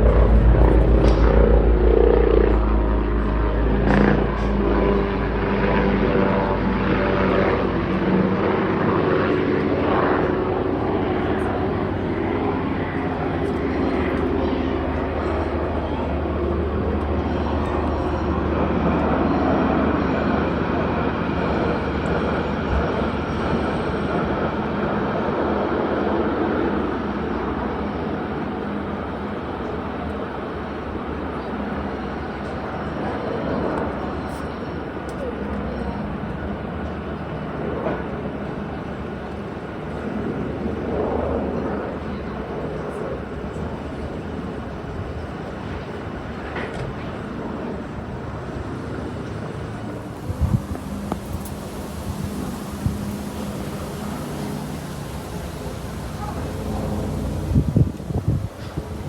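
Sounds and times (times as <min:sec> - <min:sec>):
steady low drone: 0:00.0 - 0:31.1, 0:46.6 - 0:59.0
aircraft engine rush: 0:00.0 - 0:59.0.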